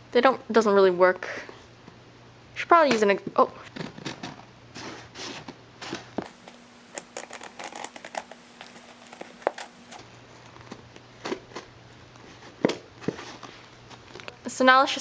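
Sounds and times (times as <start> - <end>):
package crinkling and rustling: 6.3 - 11.4.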